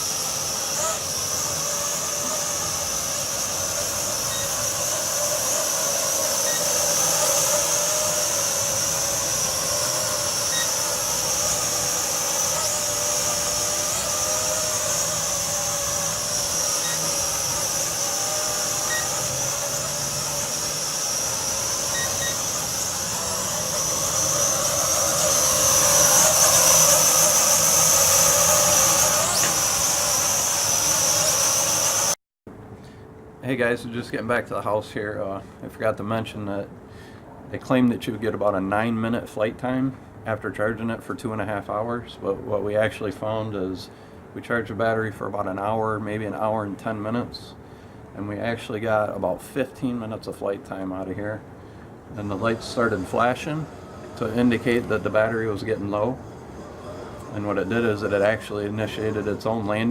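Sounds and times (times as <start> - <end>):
drone propellers whining: 0.0 - 32.2, 50.6 - 59.9.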